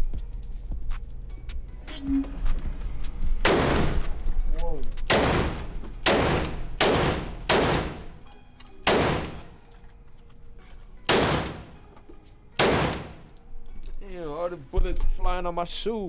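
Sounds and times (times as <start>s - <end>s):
handgun shots with echo: 3.4s - 4.4s, 5.0s - 9.7s, 11.1s - 12.0s, 12.6s - 13.4s.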